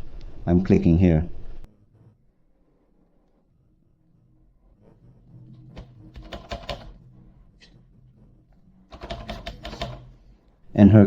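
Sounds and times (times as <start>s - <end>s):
typewriter mechanism clicking: 8.9s - 10.1s.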